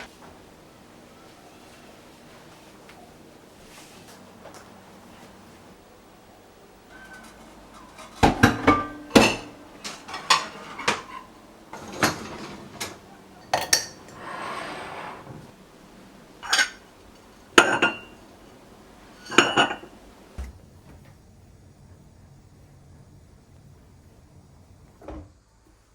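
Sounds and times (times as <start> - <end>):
dishes and utensils clinking: 6.9 - 15.5, 16.4 - 16.9, 17.5 - 18.3, 19.0 - 20.2.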